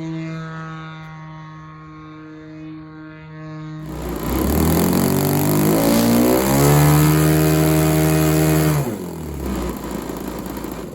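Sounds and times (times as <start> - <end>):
model airplane engine revving: 3.8 - 10.9.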